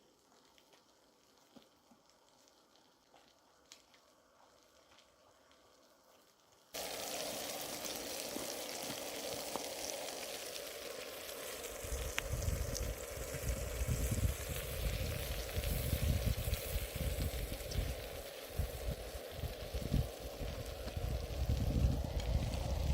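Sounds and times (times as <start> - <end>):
food sizzling in a frying pan: 6.8 - 22.9
wind rumbling on microphone: 11.7 - 22.9.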